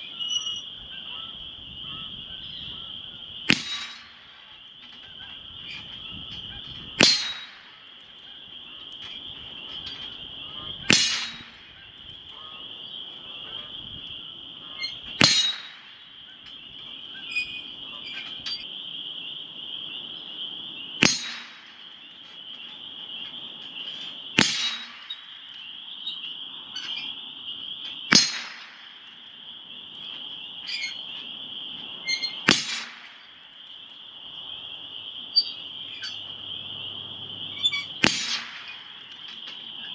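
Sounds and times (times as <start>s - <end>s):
rifle shots: 3.5s - 4.5s, 7.0s - 8.0s, 10.9s - 11.8s, 15.2s - 16.2s, 21.0s - 22.0s, 24.4s - 25.7s, 28.1s - 29.3s, 32.3s - 33.4s, 38.0s - 39.3s
steel target ringing: 3.5s - 4.6s, 7.0s - 8.0s, 10.9s - 12.0s, 15.2s - 16.3s, 21.0s - 22.0s, 24.4s - 25.7s, 28.1s - 29.2s, 32.1s - 33.5s, 37.8s - 39.4s.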